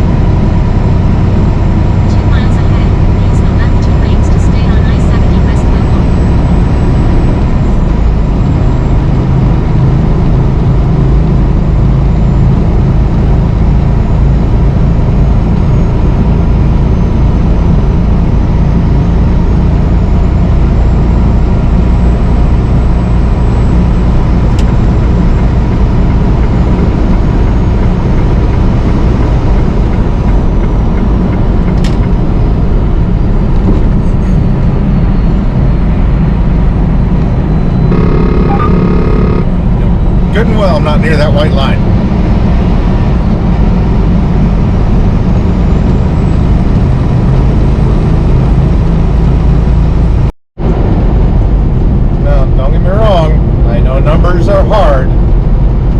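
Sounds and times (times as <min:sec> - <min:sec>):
diesel truck engine droning: 0:00.0 - 0:55.9.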